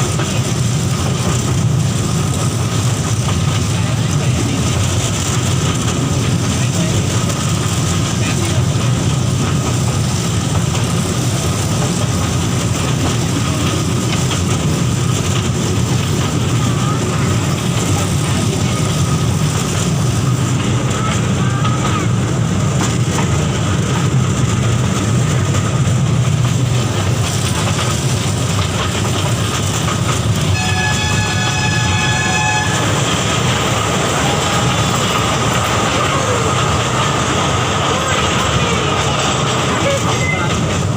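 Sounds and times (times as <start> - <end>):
toy train rumbling: 0.0 - 40.9
toy train horn: 30.5 - 33.3.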